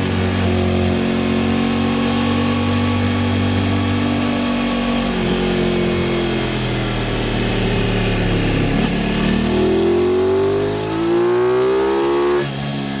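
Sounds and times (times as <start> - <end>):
motorcycle engine accelerating: 0.0 - 13.0.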